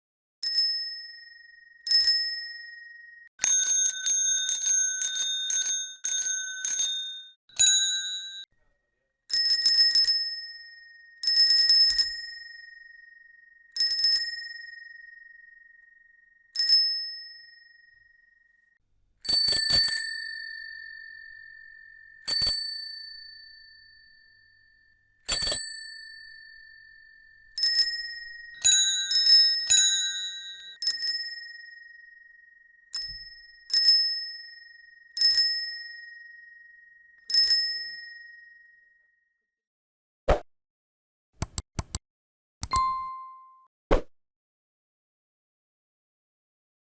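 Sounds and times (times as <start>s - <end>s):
bicycle bell ringing: 1.9s - 8.5s, 19.3s - 24.2s, 25.3s - 32.2s, 33.0s - 36.6s.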